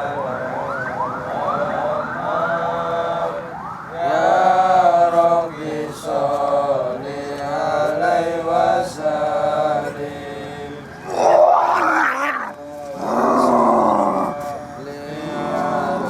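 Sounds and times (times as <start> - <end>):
voice wailing: 11.0 - 14.4.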